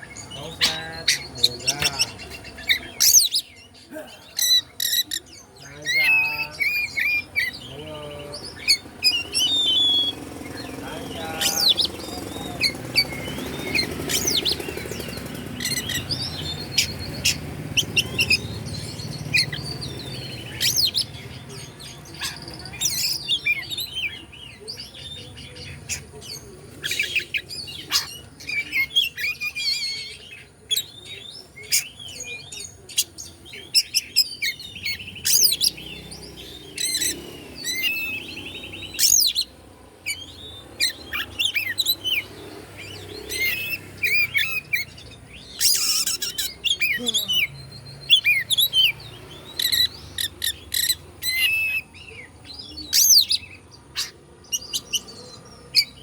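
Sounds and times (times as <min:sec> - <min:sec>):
bird whistling and chirping: 0:00.0 - 0:03.7, 0:08.5 - 0:10.5, 0:33.7 - 0:39.5, 0:40.1 - 0:56.0
harsh rasping bird notes: 0:00.0 - 0:21.5.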